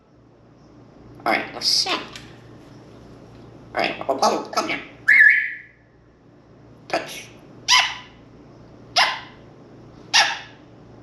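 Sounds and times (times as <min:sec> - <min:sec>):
parrot whistle: 0:05.1 - 0:05.8
parrot harsh calls: 0:07.7 - 0:08.2, 0:09.0 - 0:09.4, 0:10.1 - 0:10.6.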